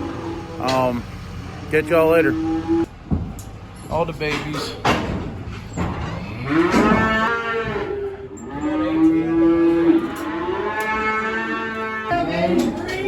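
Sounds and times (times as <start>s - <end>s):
cattle mooing: 0.0s - 1.0s, 1.6s - 2.9s, 6.0s - 13.0s.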